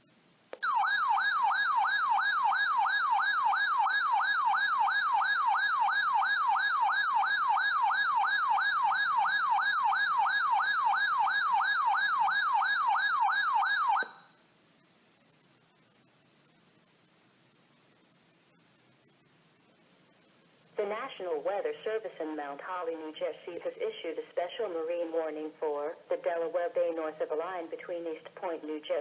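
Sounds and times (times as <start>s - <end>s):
electronic siren wail: 0.6s - 14.3s.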